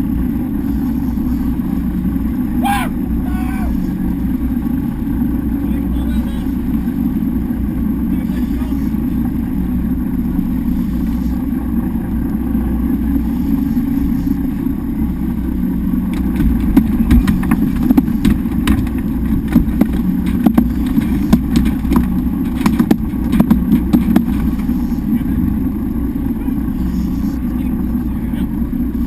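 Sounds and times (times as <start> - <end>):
boat engine droning: 0.0 - 29.0
sharp knocks and clicks: 16.1 - 24.6.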